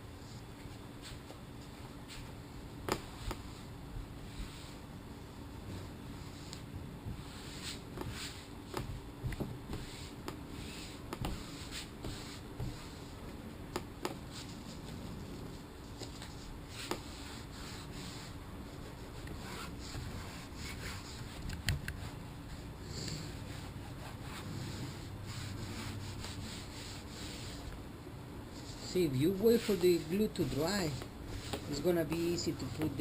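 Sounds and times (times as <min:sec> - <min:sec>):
low background hum: 0:00.0 - 0:33.0
hands rubbing fabric: 0:05.7 - 0:13.2, 0:14.0 - 0:27.8, 0:28.5 - 0:33.0.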